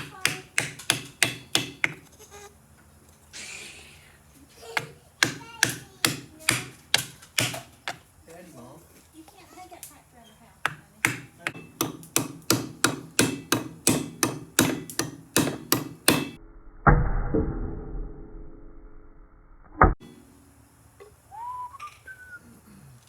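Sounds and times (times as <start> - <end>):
hammer striking wooden block: 0.0 - 2.0, 4.8 - 8.0, 10.6 - 16.4.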